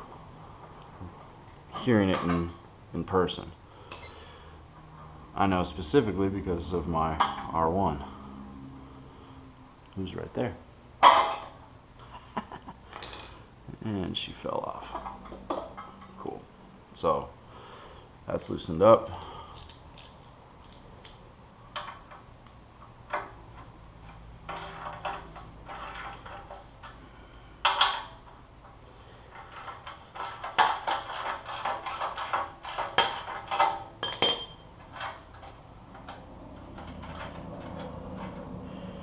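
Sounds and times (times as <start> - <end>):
metal tools clinking and knocking: 3.9 - 4.4, 11.0 - 11.6, 23.1 - 27.0, 29.3 - 38.5
sharp metal clank: 33.0 - 34.7.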